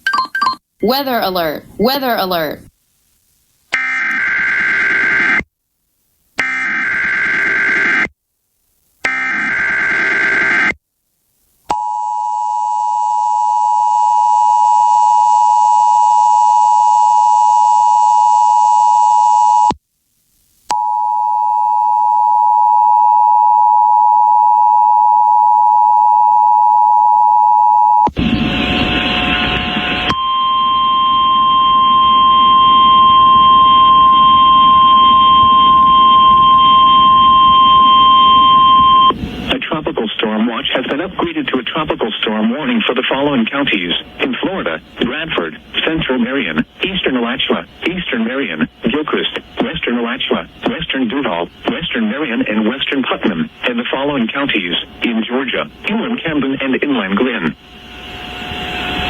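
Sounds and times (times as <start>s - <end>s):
two-tone electronic alarm: 3.8s - 5.4s, 6.4s - 8.0s, 20.7s - 39.2s
harsh static: 28.1s - 59.0s.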